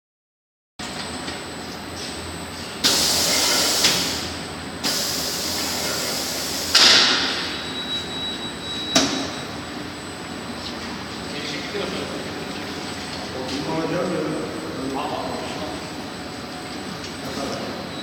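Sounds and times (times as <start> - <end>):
machine humming: 0.8 - 18.0.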